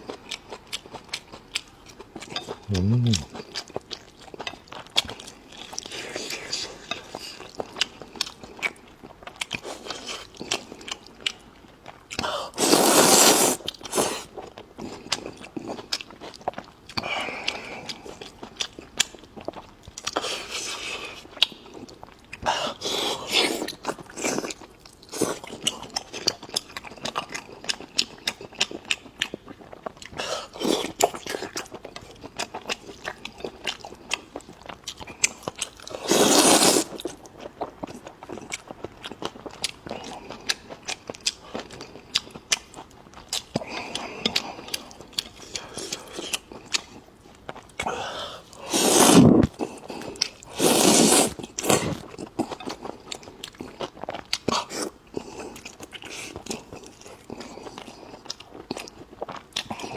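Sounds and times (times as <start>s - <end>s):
wet chewing: 0.1s - 5.2s, 12.1s - 14.3s, 25.3s - 59.9s
loud slurps: 2.7s - 3.3s, 12.6s - 14.2s, 36.0s - 37.0s, 48.6s - 49.5s, 50.5s - 52.0s.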